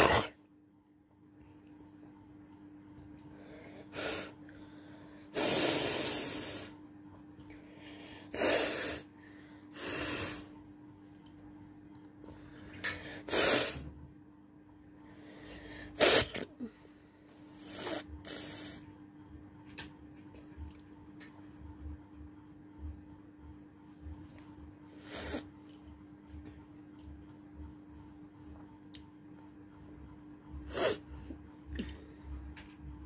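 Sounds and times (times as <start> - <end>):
person sneezing: 0.0 - 0.4, 16.0 - 16.7
person blowing nose: 5.3 - 6.7, 13.2 - 13.9, 16.0 - 16.5.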